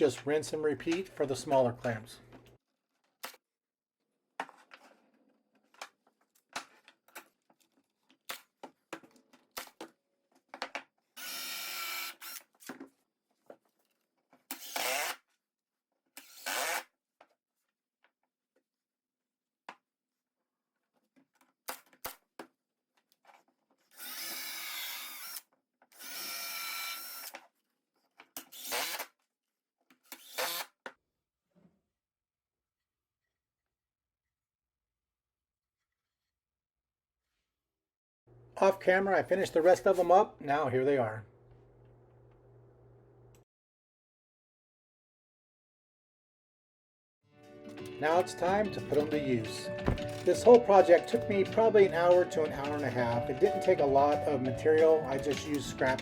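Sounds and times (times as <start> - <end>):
cordless drill driving screws: 11.2 - 12.5, 14.5 - 15.2, 16.2 - 16.9, 23.9 - 27.4, 28.4 - 29.1, 30.1 - 30.8.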